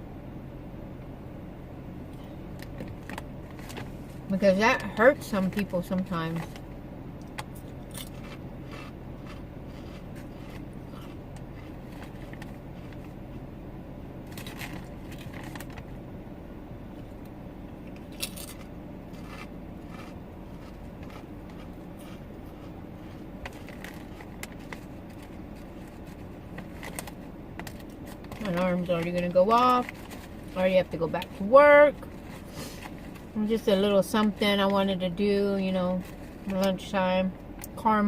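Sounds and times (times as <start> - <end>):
car interior hum: 0.0 - 38.0
chip bag crackling: 18.2 - 21.2.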